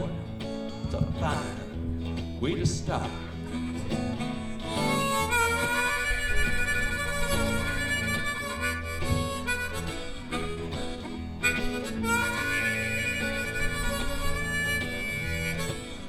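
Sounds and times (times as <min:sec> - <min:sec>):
band bass and guitar: 0:00.0 - 0:16.0
blues harmonica bending notes: 0:00.0 - 0:16.0.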